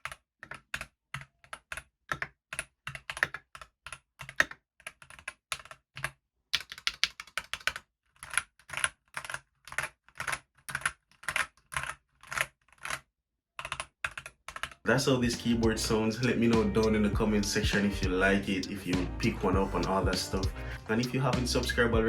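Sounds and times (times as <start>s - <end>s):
mechanical keyboard typing: 0.0s - 14.8s.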